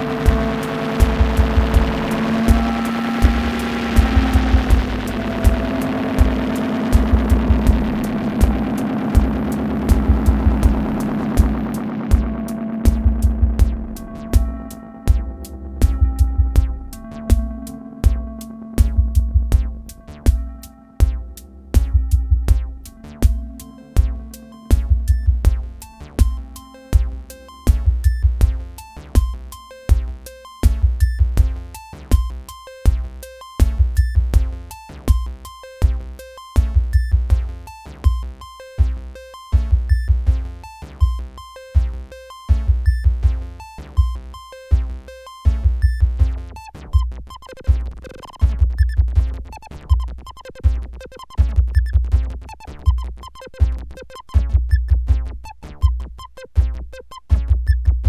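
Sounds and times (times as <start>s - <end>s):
short synth blips: 0.0s - 14.7s
deep bass drum hits: 0.2s - 19.9s.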